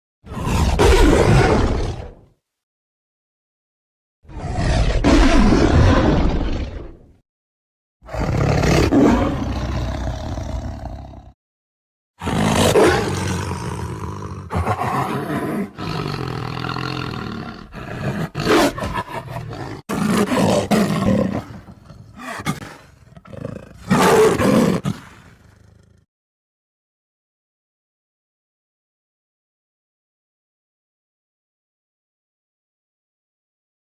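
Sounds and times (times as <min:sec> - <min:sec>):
tiger roaring and growling: 0:00.3 - 0:02.3, 0:04.3 - 0:07.2, 0:08.0 - 0:11.4, 0:12.2 - 0:26.0.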